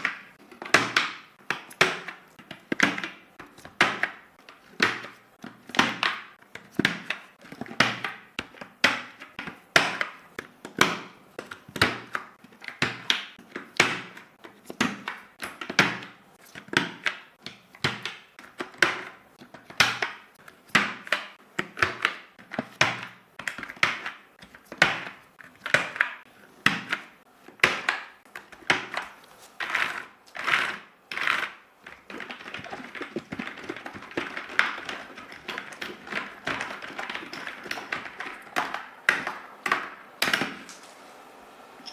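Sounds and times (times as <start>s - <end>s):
keyboard clicking: 29.7s - 40.5s.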